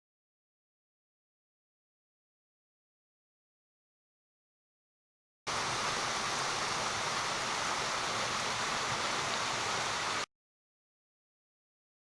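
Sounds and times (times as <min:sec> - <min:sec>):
creek water rushing: 0:05.5 - 0:10.3.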